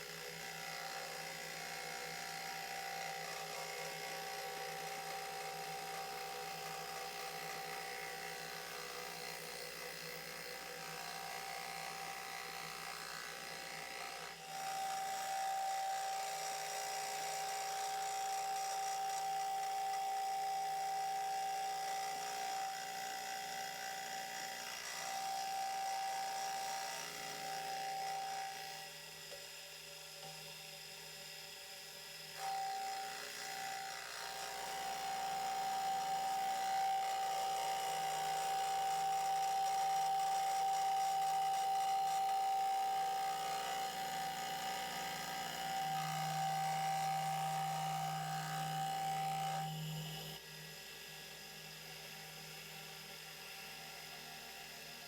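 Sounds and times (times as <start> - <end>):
milling machine high whine: 2.4 - 54.9
metal cutting noise: 32.4 - 50.3.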